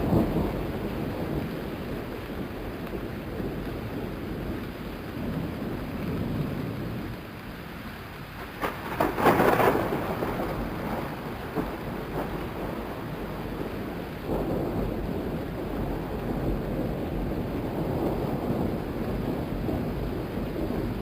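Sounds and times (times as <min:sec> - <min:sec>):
thunder crack: 0:00.0 - 0:04.1, 0:08.4 - 0:21.0
rain: 0:00.0 - 0:21.0
rolling thunder rumble: 0:00.0 - 0:21.0.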